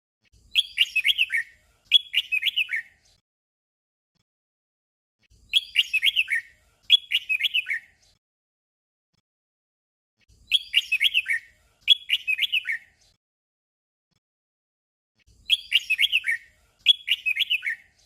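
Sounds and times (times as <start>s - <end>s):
bird singing chirpy phrase: 0.5s - 3.0s, 5.4s - 7.9s, 10.4s - 13.0s, 15.4s - 18.0s.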